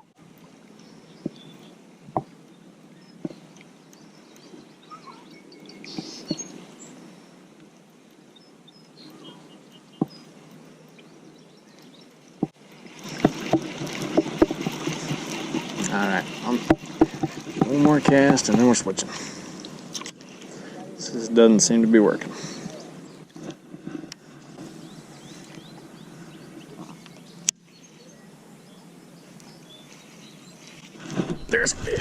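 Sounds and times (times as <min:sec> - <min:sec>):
water sloshing and lapping: 0:09.0 - 0:28.0, 0:28.8 - 0:32.0
water splashing: 0:12.4 - 0:24.0, 0:29.9 - 0:32.0
sharp knocks: 0:16.6 - 0:18.8.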